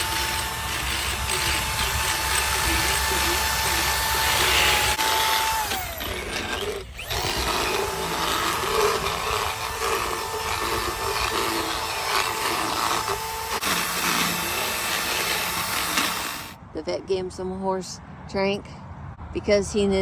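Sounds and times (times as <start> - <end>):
dental float grinding teeth: 6.3 - 16.4.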